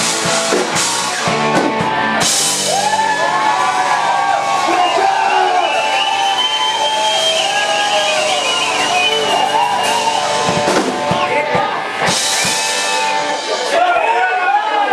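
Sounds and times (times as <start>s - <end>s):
live rock band playing: 0.0s - 14.9s
voices over music: 13.1s - 14.9s.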